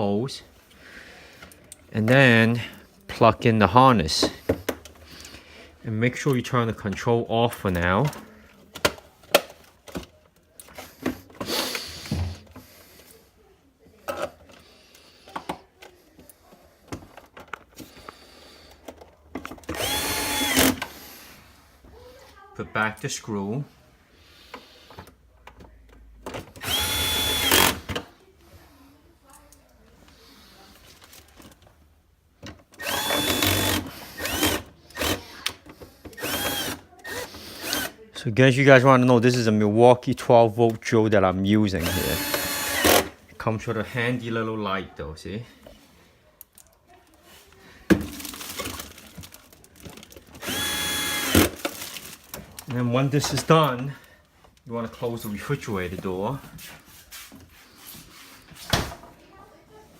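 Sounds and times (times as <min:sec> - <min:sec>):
cordless drill whine: 0:19.8 - 0:20.8, 0:26.6 - 0:27.8, 0:32.8 - 0:35.2, 0:36.2 - 0:37.9, 0:41.8 - 0:43.1, 0:50.4 - 0:51.6.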